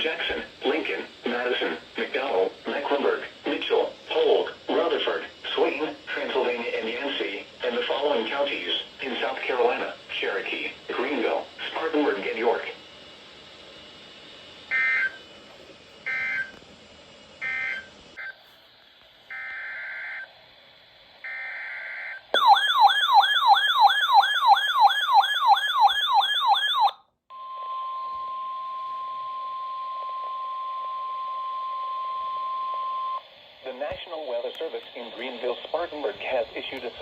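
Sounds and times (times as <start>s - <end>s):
steady single alarm tone: 14.7s - 15.2s, 16.1s - 16.5s, 17.4s - 18.4s, 19.3s - 20.3s, 21.2s - 33.2s
warbling siren-like alert tone: 21.3s - 27.0s.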